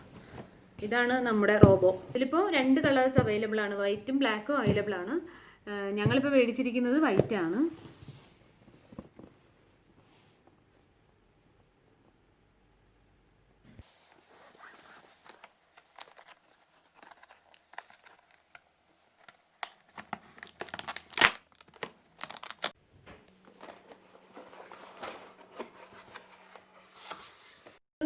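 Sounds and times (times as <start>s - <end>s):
packaging rustling and crackling: 13.9s - 27.1s.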